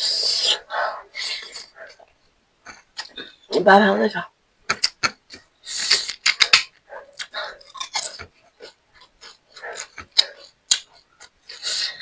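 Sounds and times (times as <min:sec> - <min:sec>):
wet mouth clicks: 0:04.7 - 0:12.0
chewing food: 0:07.2 - 0:12.0.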